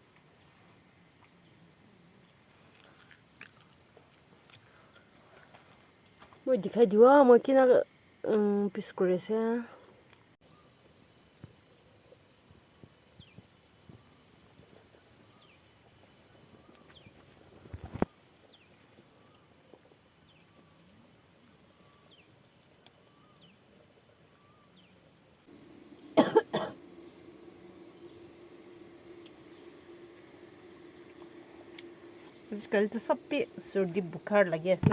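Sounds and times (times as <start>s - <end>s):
high insect drone: 0.0s - 34.9s
person coughing: 26.2s - 26.8s.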